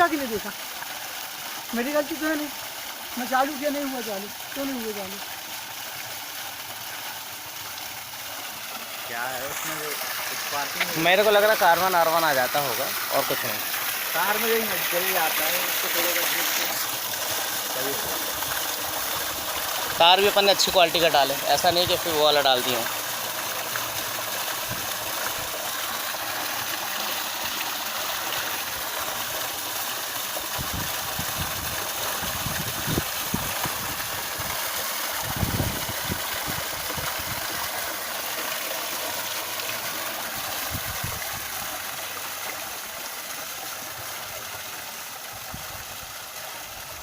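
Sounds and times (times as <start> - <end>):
waterfall splashing: 0.0 - 47.0.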